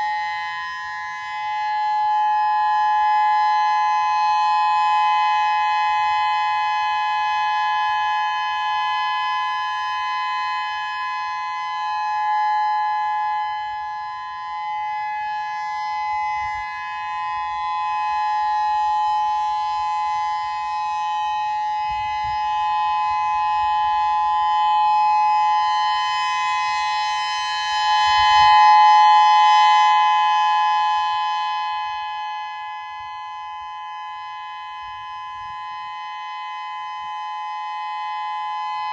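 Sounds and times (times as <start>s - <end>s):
two-note warning siren: 0.0s - 38.9s.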